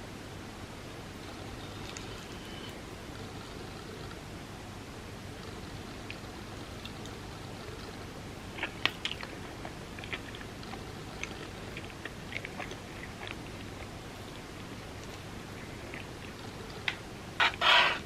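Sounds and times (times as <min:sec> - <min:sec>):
chewing and biting: 0:05.4 - 0:17.0.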